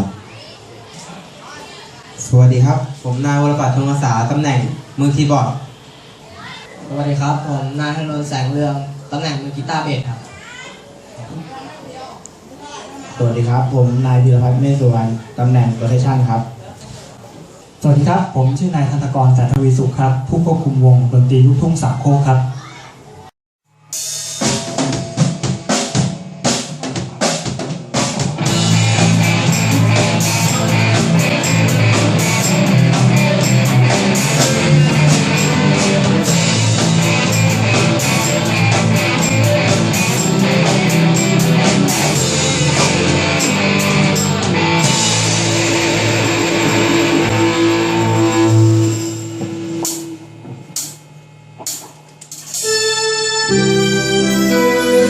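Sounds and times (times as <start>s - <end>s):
band playing: 23.8s - 51.0s, 52.3s - 55.0s
drum hits: 24.0s - 52.7s.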